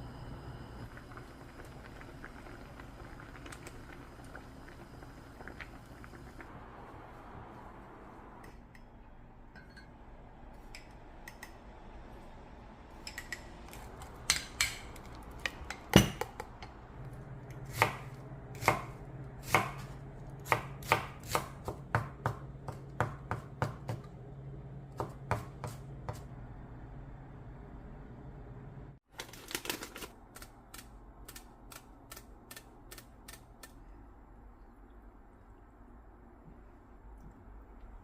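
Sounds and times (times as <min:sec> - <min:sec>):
low steady hum: 0:00.0 - 0:29.0, 0:33.5 - 0:38.0
knife chopping on cutting board: 0:18.6 - 0:24.0, 0:25.0 - 0:26.2.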